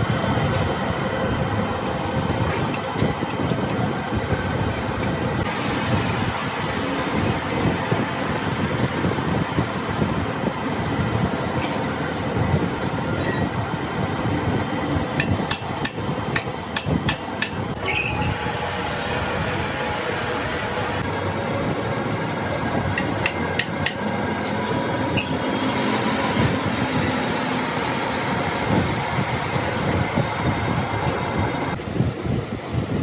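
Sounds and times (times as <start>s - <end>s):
hammering metal on metal: 15.2s - 17.7s, 23.0s - 24.9s.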